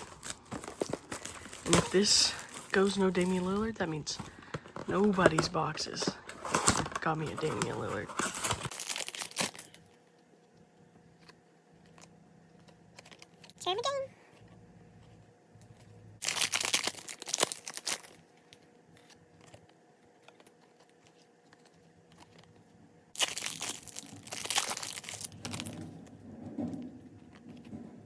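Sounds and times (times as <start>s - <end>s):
cards being handled: 0.0s - 9.6s
card pack wrapper tearing and crinkling: 0.0s - 9.8s, 16.2s - 18.2s, 23.2s - 25.8s.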